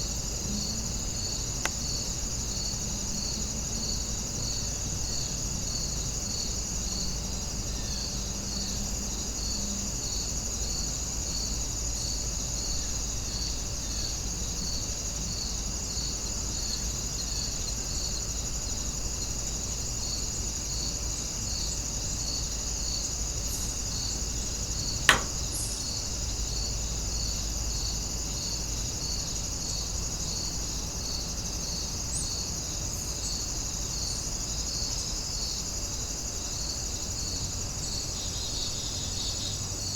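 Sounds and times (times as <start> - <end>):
sharp click: 24.8 - 26.0.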